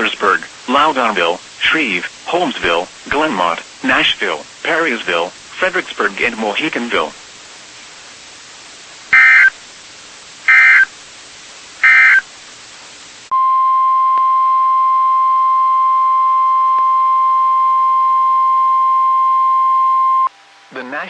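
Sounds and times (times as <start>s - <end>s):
loud warning alarm tone: 9.2s - 9.5s, 10.5s - 10.9s, 11.8s - 12.2s
data header bursts: 9.2s - 9.6s, 10.5s - 10.9s, 11.8s - 12.3s.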